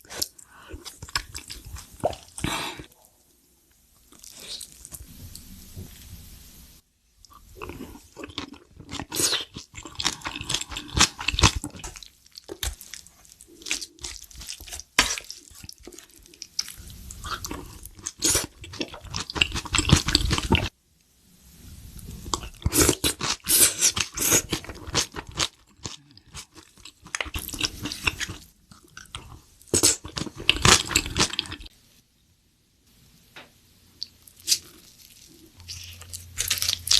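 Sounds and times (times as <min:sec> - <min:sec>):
food crunching and chewing: 0:00.0 - 0:02.9, 0:07.3 - 0:20.7, 0:22.2 - 0:31.7, 0:34.0 - 0:36.9
wet squishing: 0:07.2 - 0:20.7, 0:34.0 - 0:36.9.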